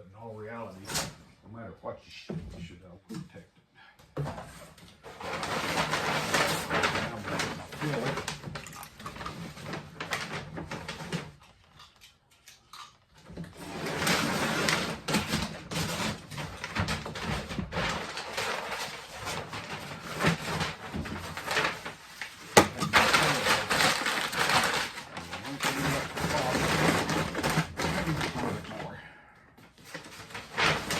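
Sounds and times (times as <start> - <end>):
tape rustling on cardboard box: 4.6 - 11.4, 13.6 - 28.8, 29.8 - 30.9.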